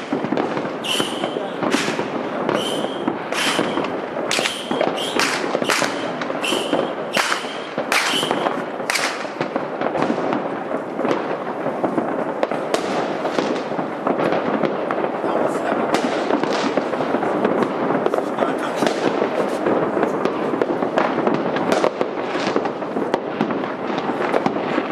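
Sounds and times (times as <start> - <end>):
fireworks bangs: 0.0 - 24.9
fireworks crackle: 0.0 - 24.9.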